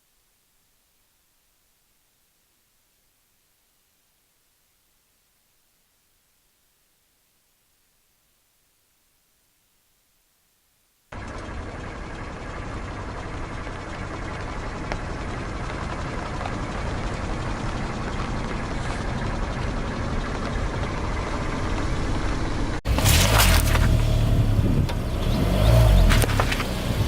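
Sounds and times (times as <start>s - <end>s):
car engine and tyres rolling: 11.1s - 27.0s
sharp crackles: 22.9s - 27.0s.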